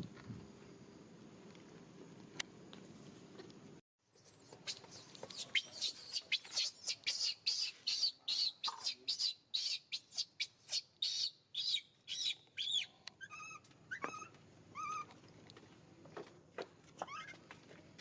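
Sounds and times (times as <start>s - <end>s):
baby monkey squealing: 4.2s - 15.1s, 17.0s - 17.4s
baby monkey wavering cries: 4.2s - 15.1s.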